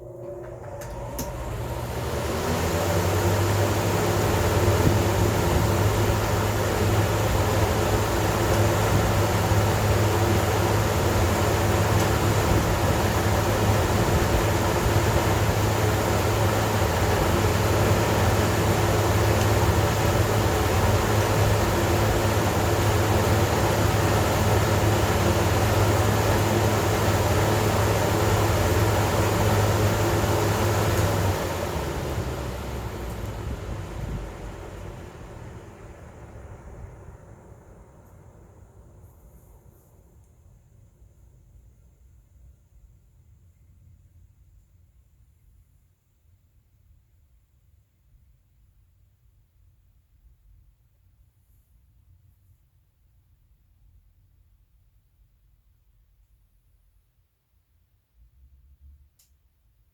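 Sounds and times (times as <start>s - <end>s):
ventilation fans running: 0.0s - 41.6s.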